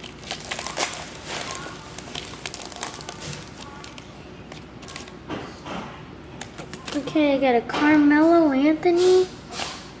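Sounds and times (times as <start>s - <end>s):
foil wrapper crinkling: 0.0s - 5.3s.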